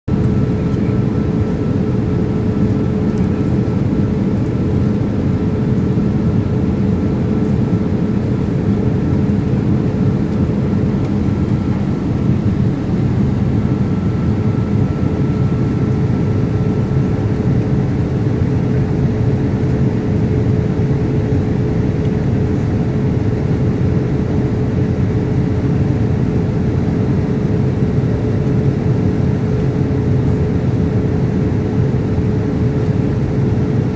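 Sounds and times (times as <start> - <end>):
steady hum: 0.1 - 33.9.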